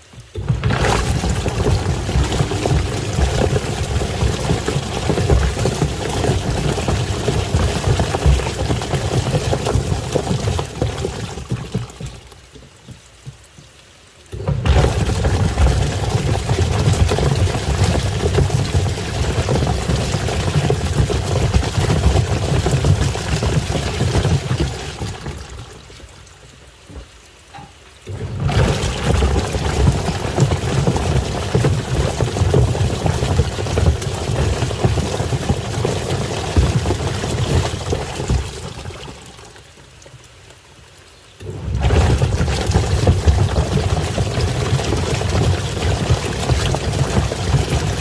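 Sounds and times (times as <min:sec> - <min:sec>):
washing machine churning water: 0:00.0 - 0:13.5, 0:14.3 - 0:40.0, 0:41.4 - 0:48.0
toys knocking in drum: 0:00.4 - 0:10.8.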